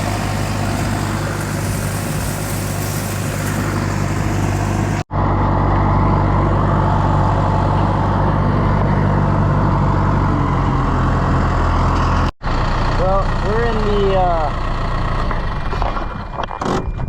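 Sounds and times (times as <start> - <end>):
tractor engine running: 0.0 - 17.0.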